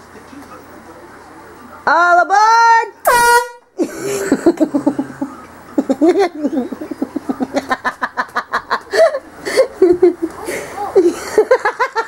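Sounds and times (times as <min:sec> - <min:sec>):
pulsing laughter: 0:03.8 - 0:12.0.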